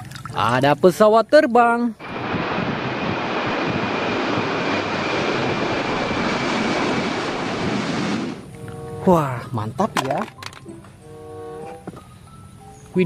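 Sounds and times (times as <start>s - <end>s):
jet engine rushing with whine: 2.0s - 9.0s.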